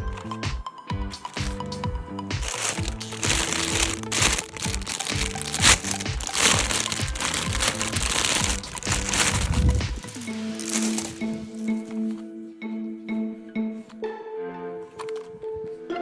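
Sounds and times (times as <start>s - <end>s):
background music with beat: 0.0s - 16.0s
plastic packaging crinkling: 1.2s - 12.2s.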